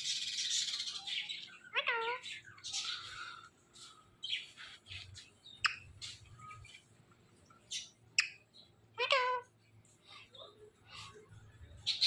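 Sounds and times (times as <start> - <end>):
parrot chirps and squawks: 0.0 - 3.2, 9.0 - 9.5.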